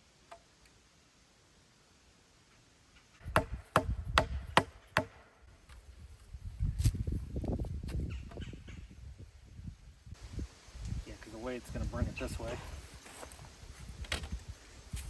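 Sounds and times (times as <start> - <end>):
sharp knocks: 3.3 - 5.3.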